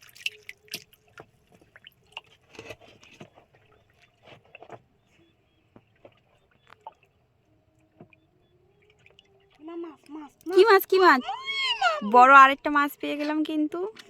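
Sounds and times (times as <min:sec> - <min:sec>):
water drips and splashes: 0:00.0 - 0:05.1, 0:05.7 - 0:11.0.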